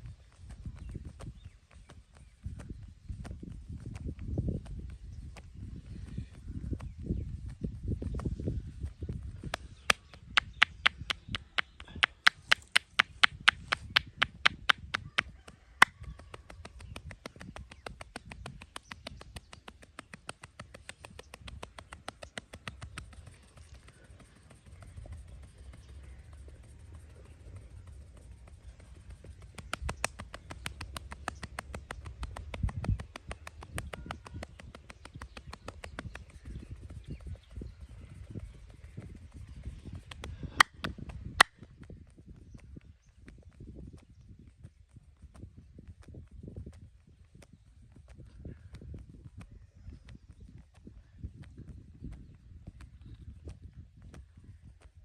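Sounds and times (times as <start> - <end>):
hands clapping on body: 9.4 - 37.4, 38.3 - 41.9.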